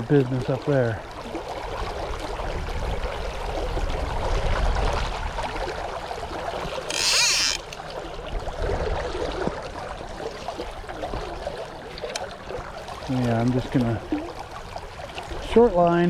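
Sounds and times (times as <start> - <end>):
river current running: 0.0 - 16.0
wind buffeting microphone: 1.6 - 5.9.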